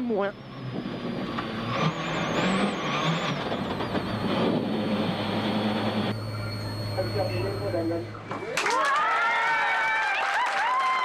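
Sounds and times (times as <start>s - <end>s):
tyre and road noise: 0.0s - 6.2s
rally car engine running hard: 0.0s - 8.2s.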